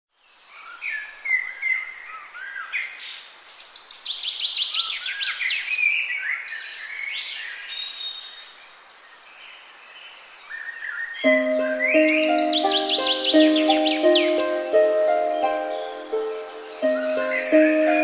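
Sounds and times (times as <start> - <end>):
songbirds chirping and singing: 9.6 - 18.0
faint background hiss: 11.2 - 18.0.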